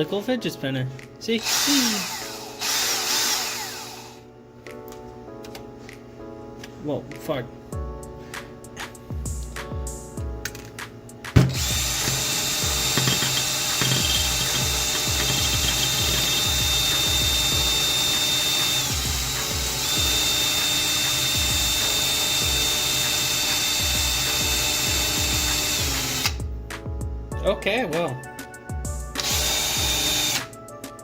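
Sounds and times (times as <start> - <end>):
electric drill whining: 1.4 - 4.3, 11.4 - 26.4, 29.2 - 30.5.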